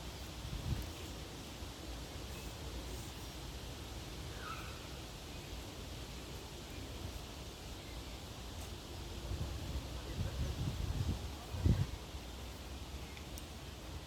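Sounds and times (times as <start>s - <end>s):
wind: 0.0s - 14.0s.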